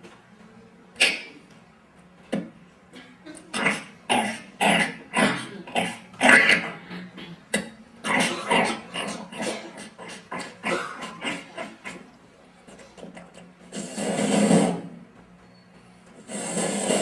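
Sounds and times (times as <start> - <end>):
man making hacking cough noises: 3.5 - 12.0.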